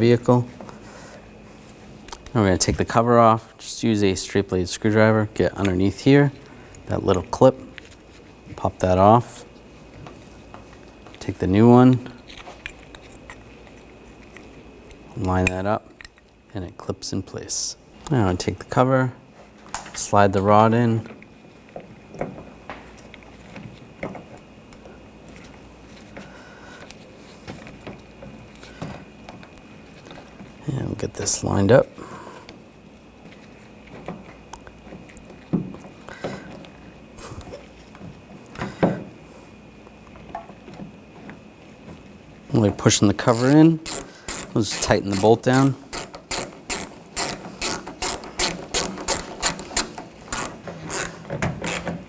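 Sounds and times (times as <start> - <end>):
hand ratchet clicking: 43.2 - 52.0.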